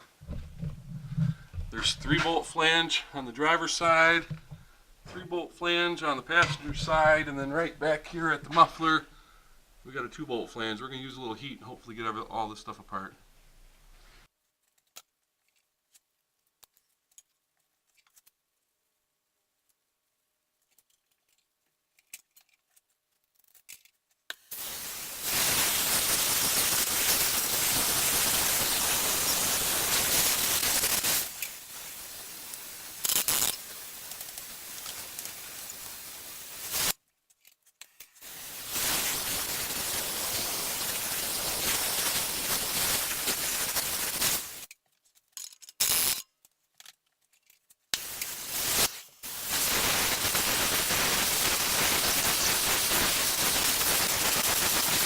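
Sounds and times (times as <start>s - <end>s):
gas torch flame hissing: 24.5s - 37.0s, 38.2s - 44.7s, 45.8s - 46.2s, 48.0s - 55.0s.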